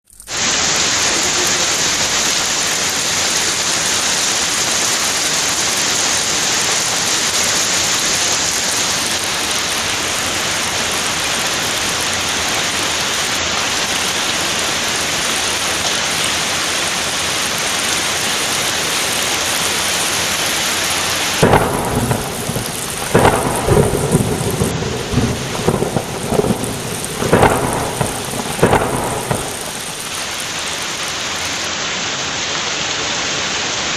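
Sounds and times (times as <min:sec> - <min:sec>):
heavy rain hissing: 0:00.1 - 0:33.9
thunder rumbling: 0:21.4 - 0:31.1.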